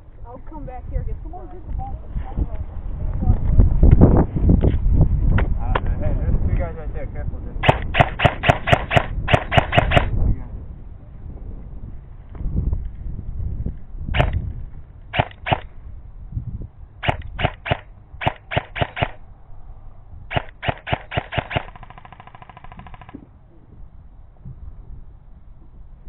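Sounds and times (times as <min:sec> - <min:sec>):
airsoft gun full-auto burst: 0:07.6 - 0:10.1, 0:14.2 - 0:14.4, 0:15.2 - 0:15.7, 0:17.0 - 0:19.2, 0:20.3 - 0:23.2
airsoft gun single shots: 0:07.6 - 0:10.1, 0:14.1 - 0:14.4, 0:15.1 - 0:15.7, 0:17.0 - 0:19.2, 0:20.3 - 0:23.2.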